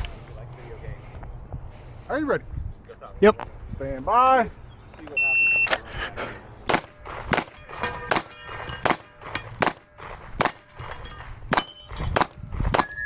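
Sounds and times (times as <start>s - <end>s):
steel targets clanging: 5.7s - 13.0s
pistol shots: 6.7s - 10.7s.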